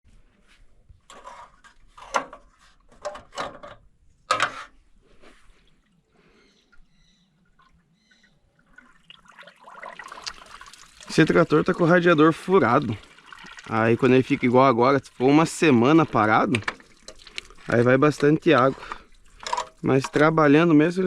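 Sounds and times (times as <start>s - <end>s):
water splashing into radiator: 8.7s - 20.8s.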